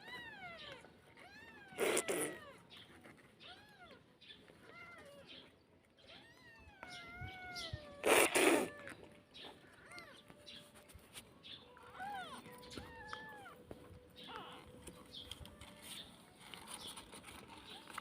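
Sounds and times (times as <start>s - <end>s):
harsh cat cries: 0.0s - 2.7s, 6.1s - 9.0s
cats meowing: 0.0s - 10.8s, 11.4s - 15.3s.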